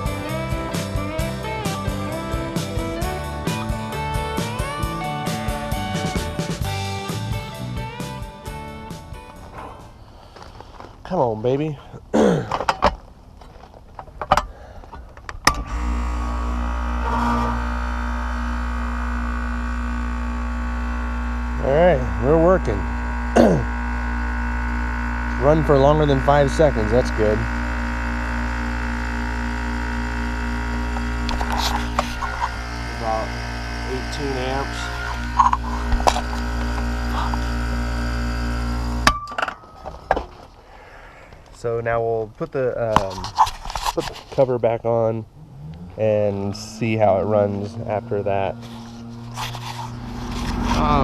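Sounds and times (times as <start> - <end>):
air conditioner compressor humming: 14.0 - 42.2, 44.6 - 51.0.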